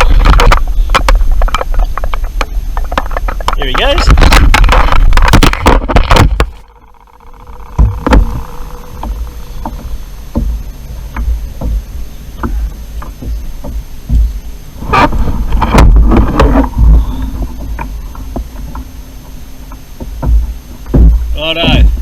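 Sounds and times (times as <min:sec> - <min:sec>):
kayak handling rumble: 0:00.0 - 0:22.0
knocks against kayak hull: 0:07.7 - 0:18.9, 0:19.7 - 0:22.0.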